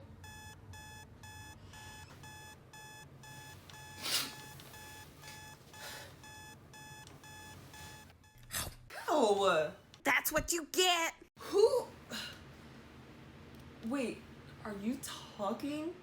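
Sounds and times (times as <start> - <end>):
alarm clock beeping: 0.2 - 8.5.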